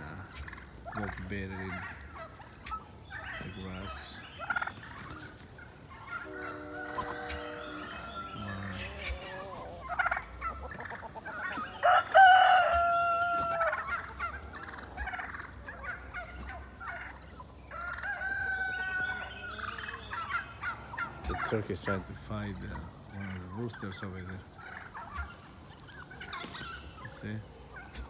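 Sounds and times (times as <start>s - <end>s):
hens clucking: 0.0s - 28.0s
turkeys gobbling: 0.0s - 28.0s
rooster crowing: 6.2s - 9.6s, 11.4s - 13.9s, 17.7s - 20.2s.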